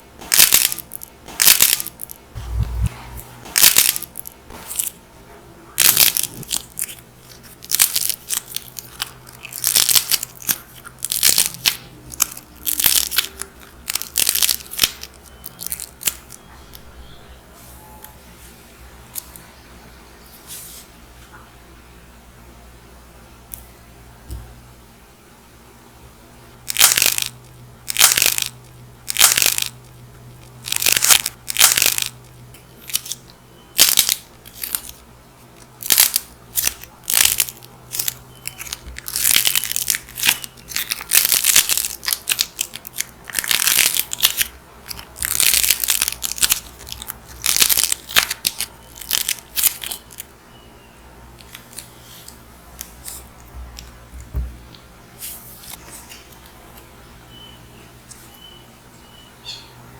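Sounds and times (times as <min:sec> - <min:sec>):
dried clay crunching: 0:05.8 - 0:16.4, 0:29.1 - 0:50.3.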